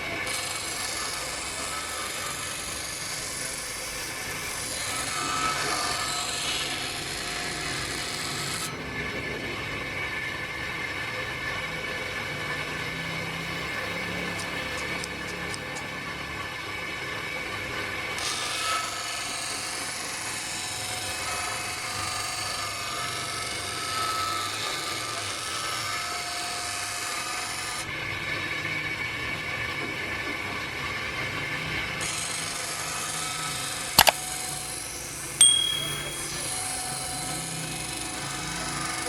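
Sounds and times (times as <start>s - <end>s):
electric grinder running: 0.0s - 8.7s, 18.2s - 28.0s, 32.0s - 35.4s, 36.1s - 39.0s.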